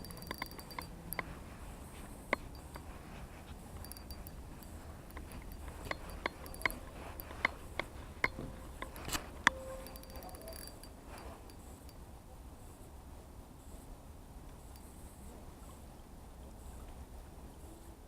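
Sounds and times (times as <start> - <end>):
fishing reel clicking: 0.0 - 2.9, 3.6 - 12.0.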